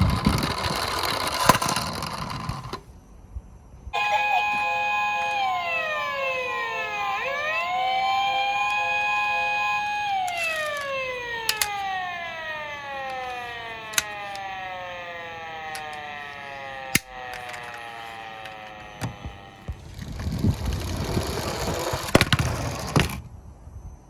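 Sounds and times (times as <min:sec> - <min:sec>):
toy police car siren: 0:00.0 - 0:02.8, 0:04.0 - 0:23.1
sharp clicks: 0:09.7 - 0:19.8.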